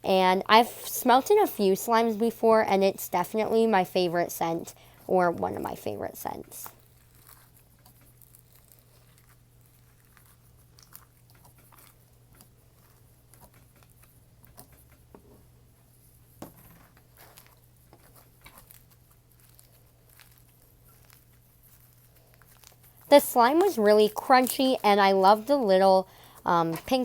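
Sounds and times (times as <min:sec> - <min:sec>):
steady low hum: 0:00.0 - 0:27.0
slime crackling and popping: 0:06.6 - 0:14.5, 0:17.1 - 0:24.8.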